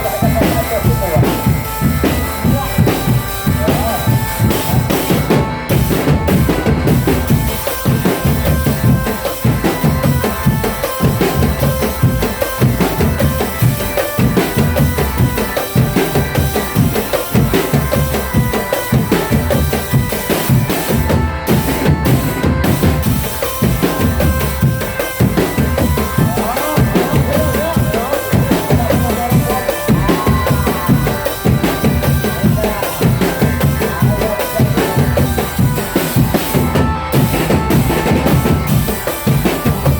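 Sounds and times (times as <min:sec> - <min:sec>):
snare drums: 0:00.0 - 0:19.7
bass drums: 0:00.0 - 0:39.9
marching drum band: 0:00.0 - 0:39.9.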